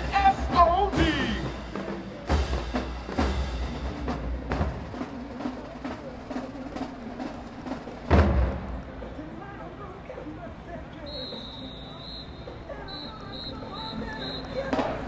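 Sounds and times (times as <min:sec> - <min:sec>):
marching band drumming: 0:00.0 - 0:09.6, 0:11.2 - 0:15.0.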